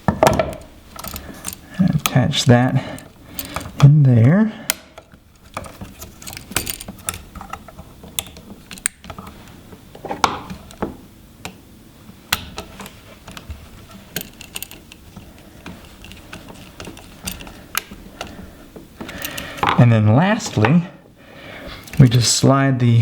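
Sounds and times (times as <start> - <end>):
screwdriver tightening screw: 12.6 - 18.3.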